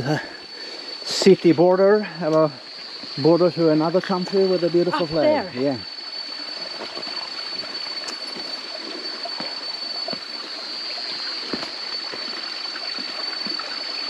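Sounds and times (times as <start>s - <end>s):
stream trickling over rocks: 0.4s - 14.0s
high-pitched tone: 4.4s - 5.8s.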